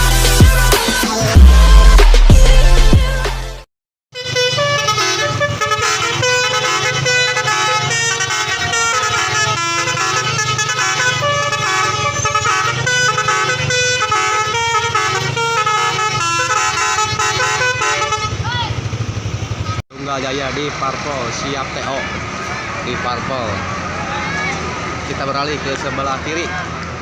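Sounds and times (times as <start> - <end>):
multi-tone musical bus horns: 0.0 - 19.0.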